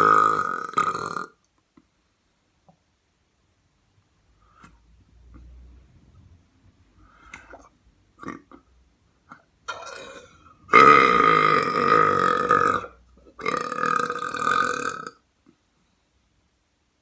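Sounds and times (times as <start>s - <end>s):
person belching: 0.0s - 1.4s, 8.2s - 8.6s, 9.7s - 15.2s.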